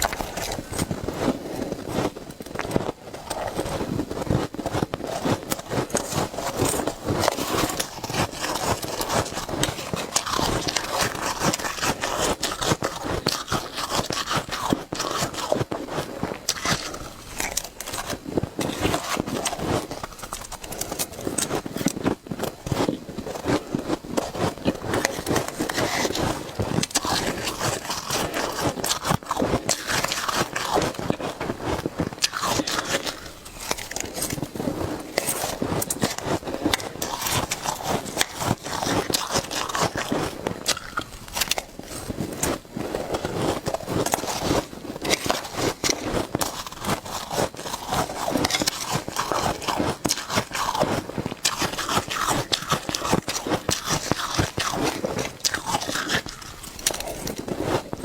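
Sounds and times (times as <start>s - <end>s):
crunching shaved ice: 0.0s - 58.0s.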